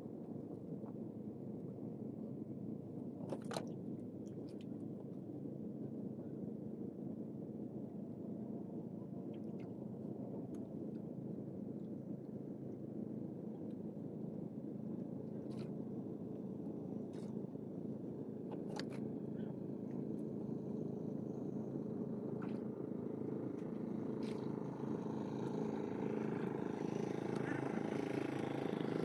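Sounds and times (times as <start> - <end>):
low engine hum: 0.0 - 29.0.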